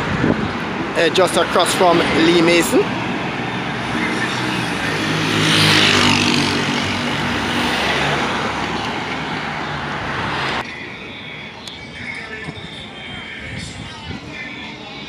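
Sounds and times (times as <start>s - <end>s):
vehicle passing close by: 0.0s - 10.6s
background traffic: 0.0s - 15.0s.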